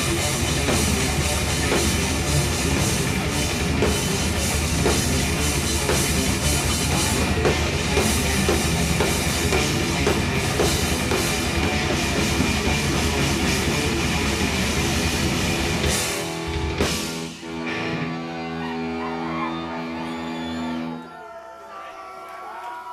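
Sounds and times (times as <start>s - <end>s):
pounding drums: 0.0s - 17.3s
metal band playing live: 0.0s - 20.9s.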